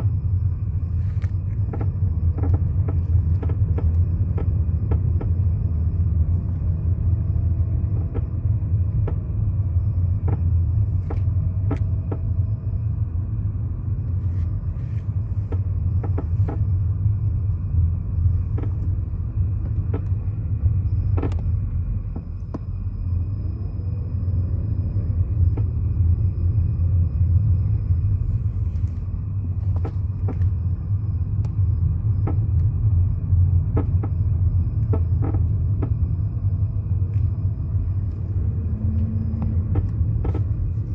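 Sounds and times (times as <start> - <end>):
car low rumble: 0.0 - 40.9
car creaks and clicks: 0.9 - 6.8, 7.4 - 12.5, 14.1 - 17.0, 18.3 - 22.8, 25.3 - 25.9, 28.4 - 32.8, 33.6 - 36.2, 36.8 - 40.9.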